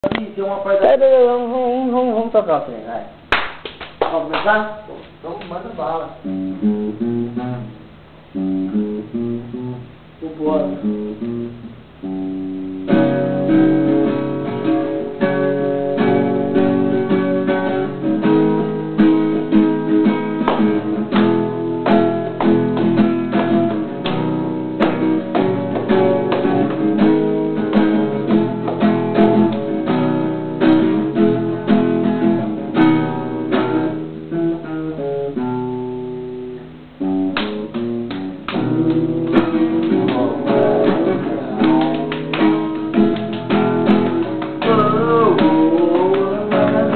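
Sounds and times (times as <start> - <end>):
acoustic guitar strumming chords: 6.0 - 46.9.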